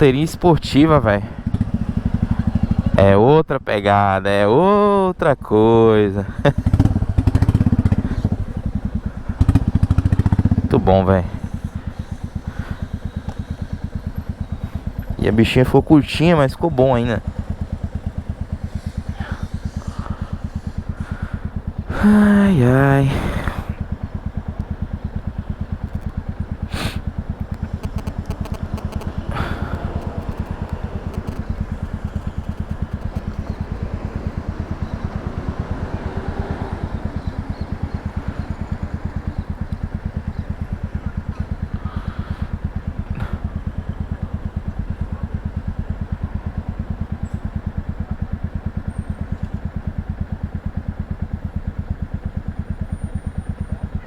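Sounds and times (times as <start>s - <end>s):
motorcycle engine idling: 0.0s - 54.0s
sharp clicks: 11.4s - 15.2s, 23.2s - 35.6s.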